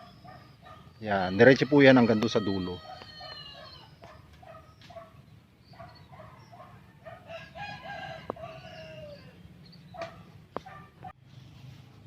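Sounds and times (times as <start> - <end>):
rooster crowing: 1.3 - 4.0, 6.9 - 9.4.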